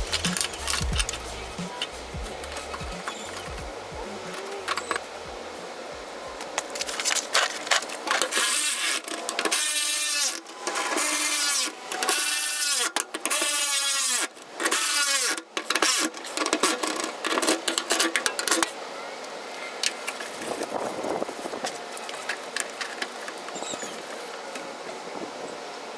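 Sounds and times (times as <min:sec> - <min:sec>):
power tool running in bursts: 0:00.0 - 0:05.4, 0:06.9 - 0:17.0.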